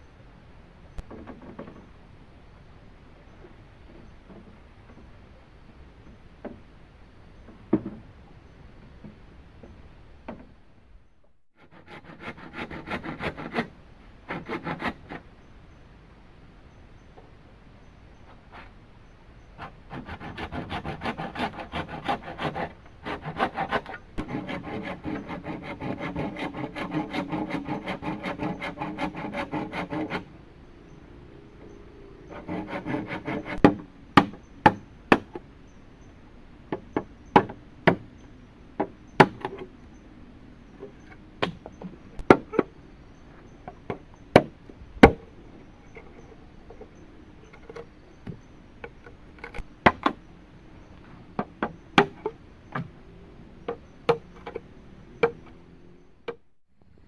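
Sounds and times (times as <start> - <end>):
hand saw cutting bamboo: 11.6 - 13.7, 14.3 - 15.2, 19.6 - 30.3, 32.3 - 35.2.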